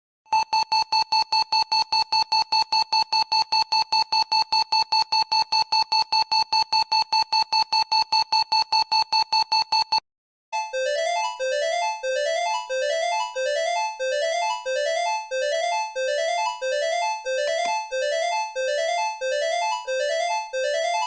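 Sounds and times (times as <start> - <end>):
rapid high alert beeps: 0.3 - 10.0.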